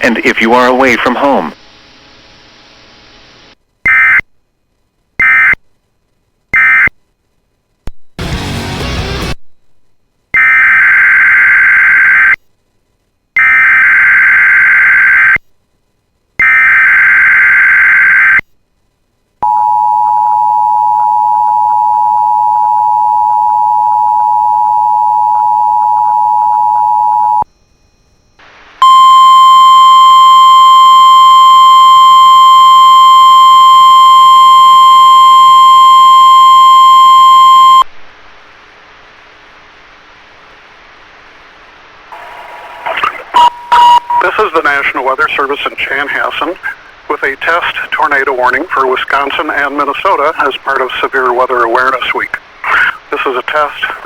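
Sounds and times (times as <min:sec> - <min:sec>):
two-tone attention signal: 0:42.2 - 0:44.2.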